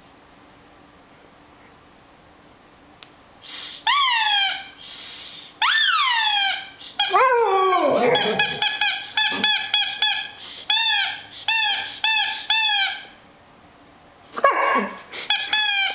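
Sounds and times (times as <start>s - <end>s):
dog whining and howling: 3.8s - 4.8s, 5.6s - 13.2s, 14.4s - 15.9s
dog yipping: 3.9s - 4.7s, 5.6s - 13.2s, 14.4s - 15.9s.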